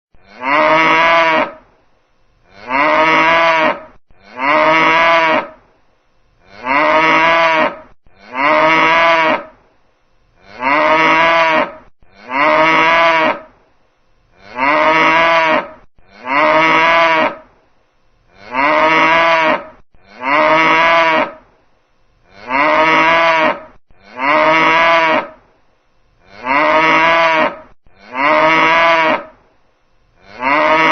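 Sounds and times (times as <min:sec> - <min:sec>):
cow mooing: 0:00.2 - 0:01.6, 0:02.5 - 0:05.6, 0:06.5 - 0:09.5, 0:10.4 - 0:13.5, 0:14.4 - 0:17.4, 0:18.4 - 0:21.4, 0:22.4 - 0:25.4, 0:26.3 - 0:29.3, 0:30.2 - 0:30.9.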